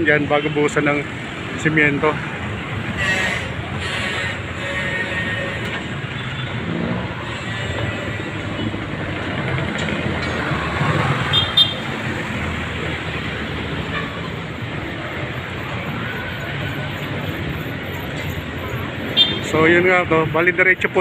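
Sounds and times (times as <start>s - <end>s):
passing vehicles: 0.0s - 21.0s
car horn toot: 2.9s - 6.6s, 11.3s - 11.8s.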